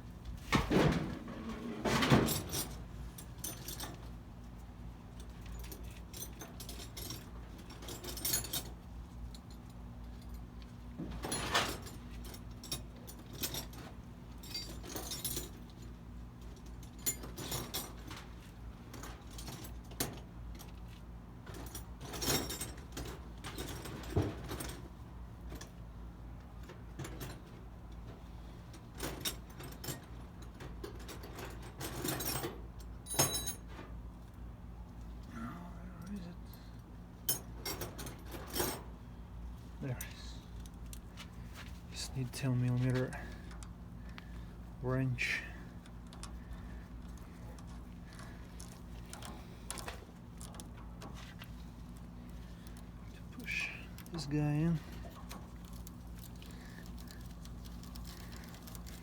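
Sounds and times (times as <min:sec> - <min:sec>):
steady low hum: 0:34.2 - 0:59.0
metal tools clinking and scraping: 0:44.9 - 0:59.0.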